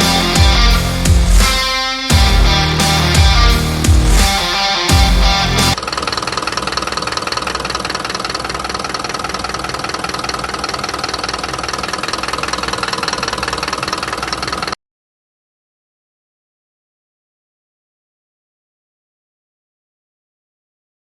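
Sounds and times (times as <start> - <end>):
diesel engine idling: 0.0 - 14.8.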